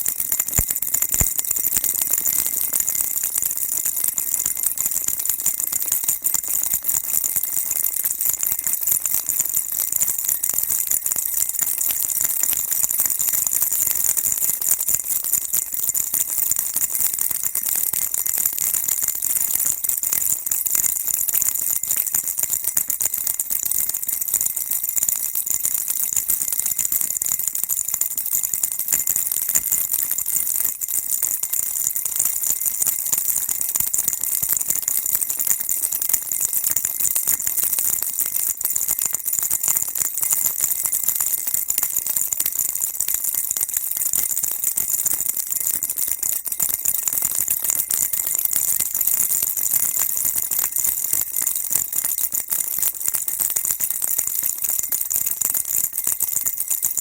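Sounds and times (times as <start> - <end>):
baby rattle shaking: 0.6 - 1.7.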